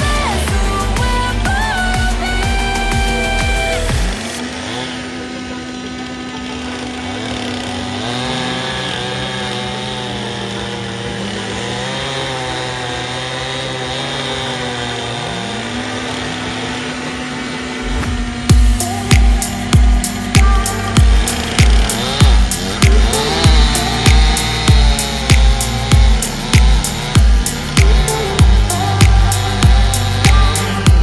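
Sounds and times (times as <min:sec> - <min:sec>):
chainsaw cutting a log: 0:00.0 - 0:31.0.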